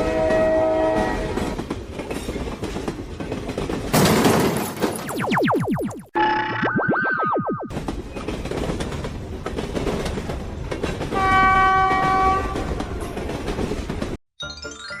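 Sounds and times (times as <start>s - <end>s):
train horn blast: 0.0s - 1.4s, 11.2s - 12.8s
train rail clatter: 0.0s - 4.9s, 7.7s - 14.2s.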